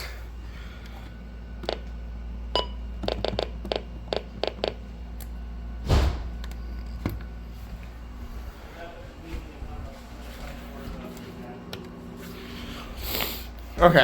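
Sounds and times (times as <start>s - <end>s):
steady low hum: 0.0s - 14.0s
heavy thump: 5.8s - 6.4s.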